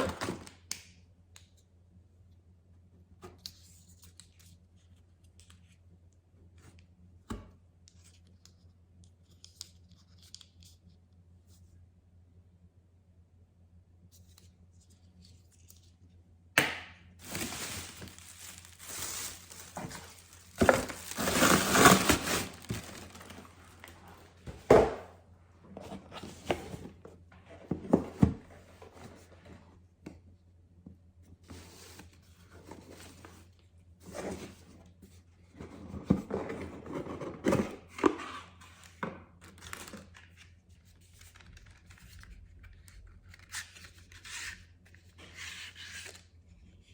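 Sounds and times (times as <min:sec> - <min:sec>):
packaging tearing and crinkling: 0:17.2 - 0:24.0.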